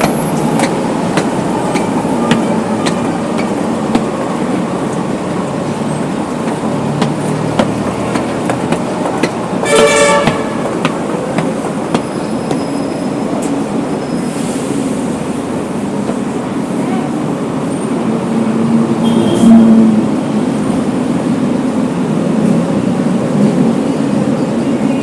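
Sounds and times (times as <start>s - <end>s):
city traffic engines: 0.0s - 25.0s
vehicle horn: 9.6s - 10.8s, 19.0s - 19.8s.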